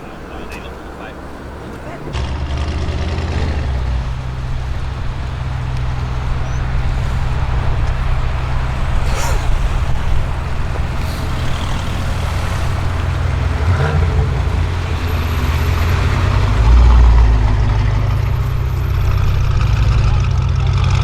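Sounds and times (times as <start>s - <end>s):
car engine idling and revving: 0.0s - 21.0s.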